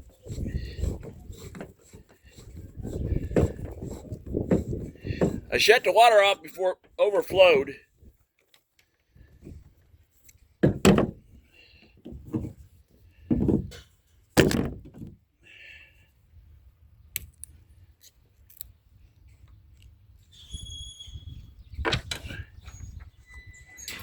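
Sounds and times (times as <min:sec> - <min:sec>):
objects thumping and knocking: 0:00.3 - 0:05.5, 0:10.6 - 0:11.3, 0:12.0 - 0:12.6, 0:13.2 - 0:15.2.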